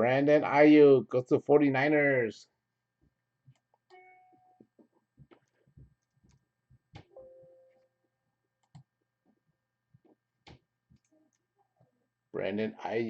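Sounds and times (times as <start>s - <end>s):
faint clicks and taps: 3.0s - 7.9s, 8.6s - 11.9s.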